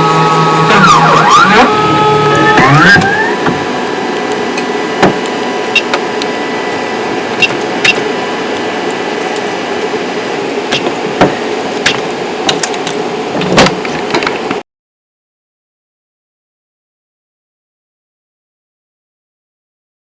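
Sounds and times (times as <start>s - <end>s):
fan hum: 0.0s - 14.6s
printer motor whine: 0.0s - 14.6s.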